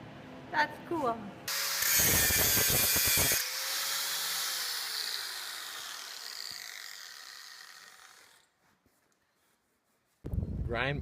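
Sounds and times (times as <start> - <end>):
grinder disc winding down: 1.5 - 8.5
angle grinder cutting steel: 1.5 - 8.6.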